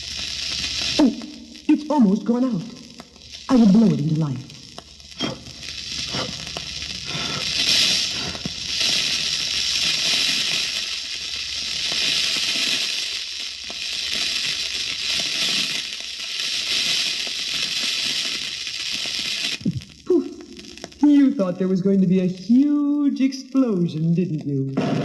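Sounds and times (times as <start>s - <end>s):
fuse hissing and crackling: 0.0s - 25.0s.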